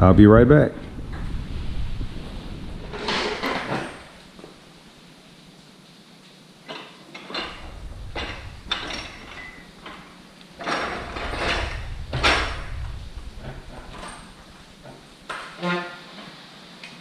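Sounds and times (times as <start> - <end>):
metal clatter: 2.8 - 4.3, 6.7 - 15.6
metal parts clanking: 2.9 - 4.2, 6.7 - 15.8.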